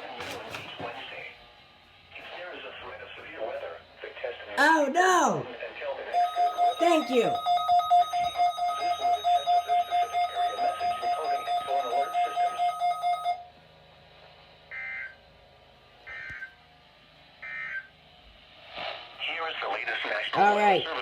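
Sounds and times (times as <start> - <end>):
short beeps: 6.2 - 13.4
pulsing radio alert alarm: 6.2 - 13.5, 14.7 - 15.2.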